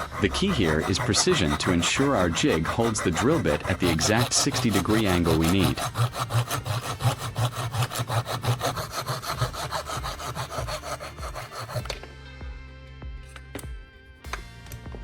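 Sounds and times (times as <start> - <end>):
handsaw cutting wood: 0.0 - 12.0.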